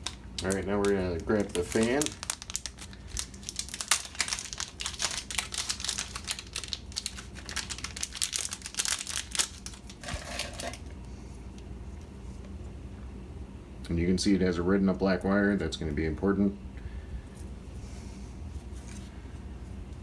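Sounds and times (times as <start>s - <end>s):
packaging crinkling and rustling: 0.0s - 10.9s.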